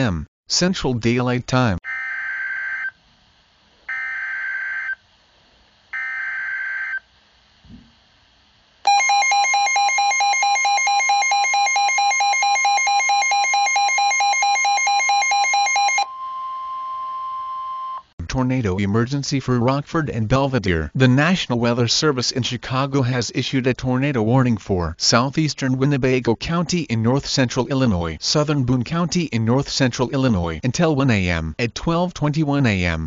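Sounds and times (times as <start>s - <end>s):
two-tone attention alarm: 8.9s - 18.1s.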